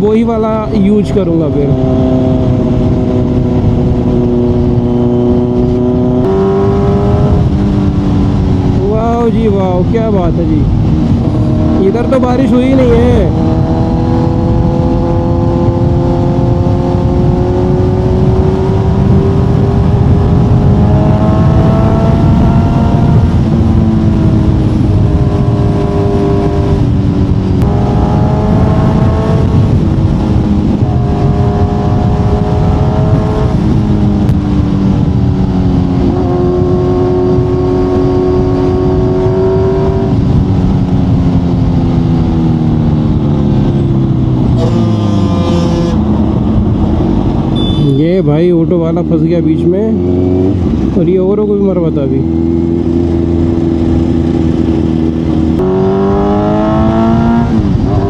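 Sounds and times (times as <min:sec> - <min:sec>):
wind rush: 0:00.0 - 0:58.0
motorcycle engine changing gear: 0:41.2 - 0:48.2.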